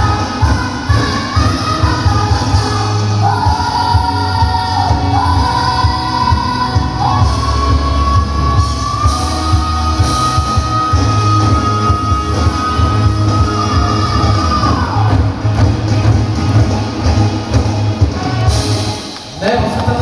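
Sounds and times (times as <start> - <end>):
band music with heavy beat: 0.0 - 20.0.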